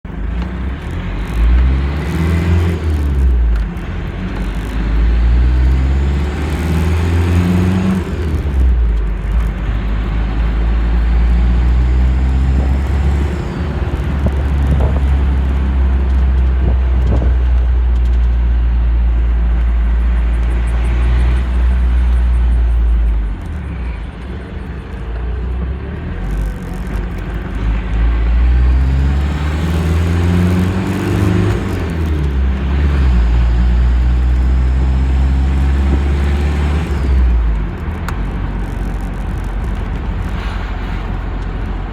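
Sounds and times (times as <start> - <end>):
car engine revving: 0.1 - 41.9.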